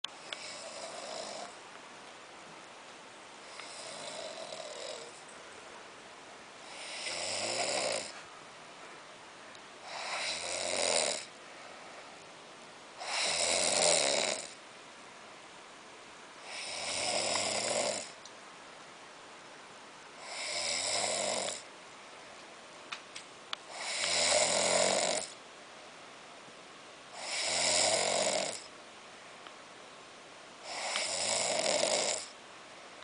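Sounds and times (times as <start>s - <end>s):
person snoring: 0.2s - 1.6s, 3.4s - 5.2s, 6.6s - 8.2s, 9.8s - 11.3s, 13.0s - 14.6s, 16.4s - 18.2s, 20.2s - 21.7s, 23.7s - 25.4s, 27.2s - 28.7s, 30.6s - 32.4s.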